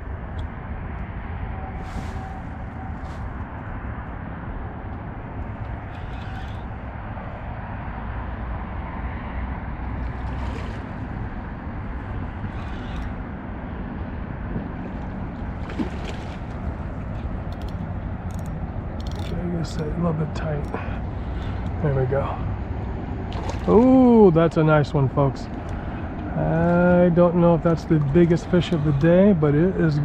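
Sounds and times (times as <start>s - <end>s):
faint rustles: 1.8s - 3.5s.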